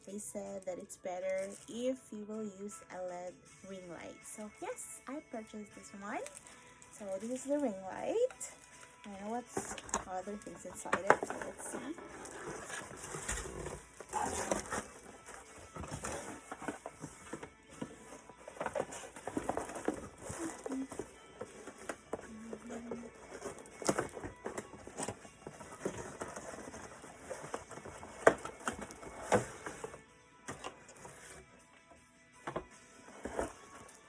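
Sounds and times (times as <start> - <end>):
packaging rustling and clicking: 6.2 - 31.4, 32.5 - 34.0.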